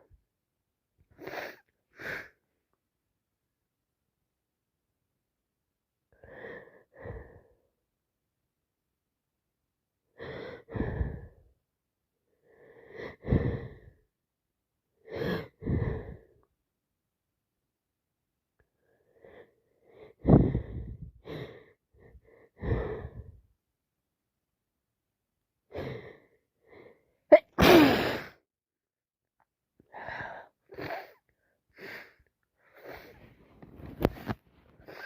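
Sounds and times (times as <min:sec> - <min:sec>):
person sneezing: 0:27.3 - 0:28.4
person sniffing: 0:27.6 - 0:28.4.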